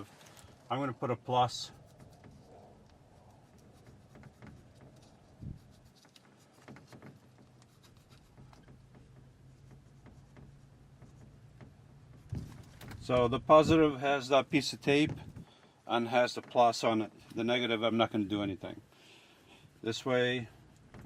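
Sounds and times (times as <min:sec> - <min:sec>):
small rubs and clicks: 0:00.0 - 0:21.0
marker writing: 0:01.7 - 0:12.8
soft knock: 0:06.6 - 0:13.8.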